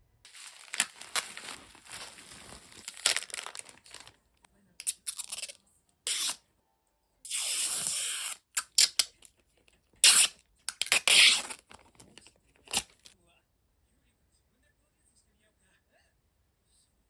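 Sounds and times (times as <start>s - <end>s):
packaging tearing and rustling: 0.3s - 4.2s, 4.8s - 5.5s, 10.0s - 13.1s.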